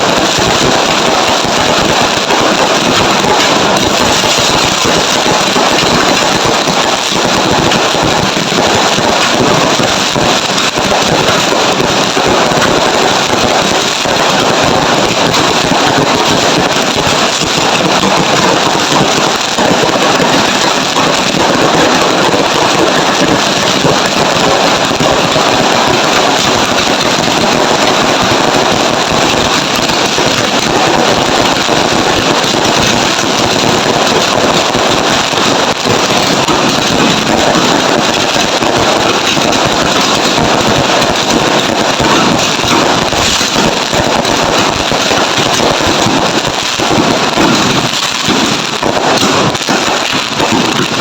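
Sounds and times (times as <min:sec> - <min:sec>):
fireworks crackling: 0:00.0 - 0:51.0.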